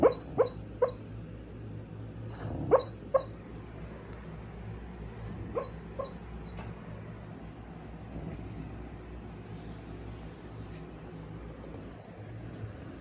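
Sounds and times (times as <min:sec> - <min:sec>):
dog barking in sleep: 0:00.0 - 0:01.1, 0:02.3 - 0:03.4, 0:05.1 - 0:06.3, 0:08.0 - 0:10.4, 0:11.7 - 0:13.0.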